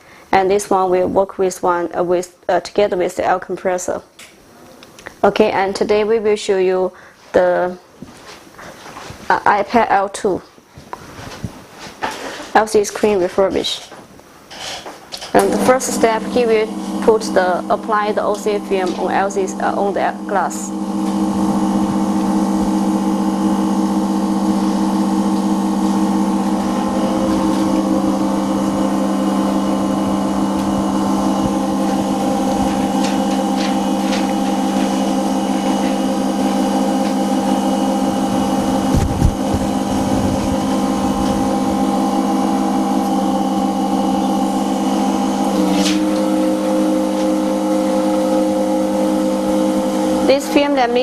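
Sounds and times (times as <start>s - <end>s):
laminating machine pump hum: 11.0s - 51.0s.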